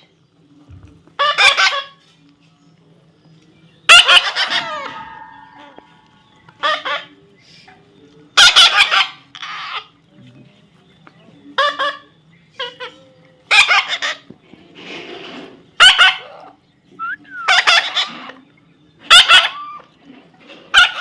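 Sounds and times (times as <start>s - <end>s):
parrot squawking: 3.9s - 7.1s, 8.4s - 9.9s, 15.8s - 18.3s, 19.1s - 19.9s.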